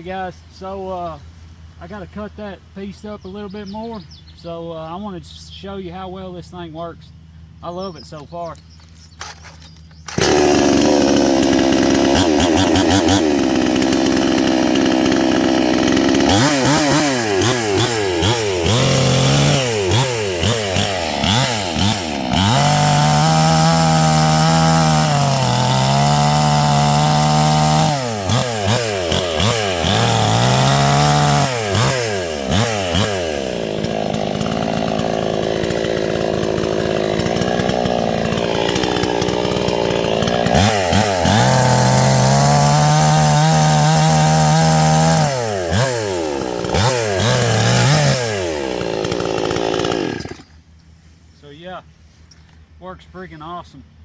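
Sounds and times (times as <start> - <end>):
chainsaw cutting wood: 8.9 - 51.0
chainsaw revving: 9.2 - 50.8.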